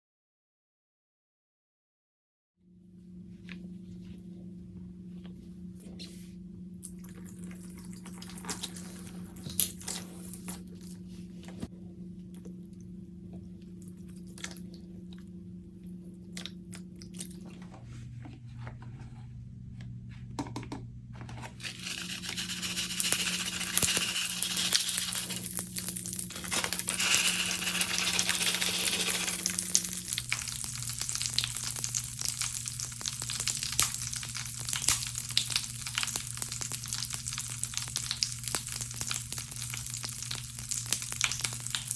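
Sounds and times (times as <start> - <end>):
low steady hum: 2.7 - 41.9
crystals crackling and fizzing in liquid: 21.6 - 41.9.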